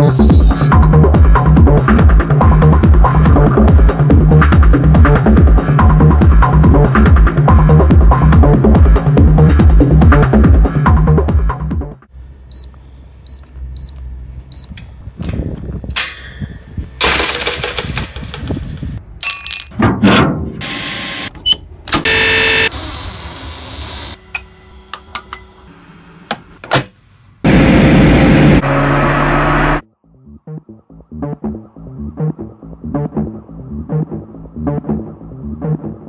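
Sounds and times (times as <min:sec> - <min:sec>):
mechanical noises: 0:17.0 - 0:19.0.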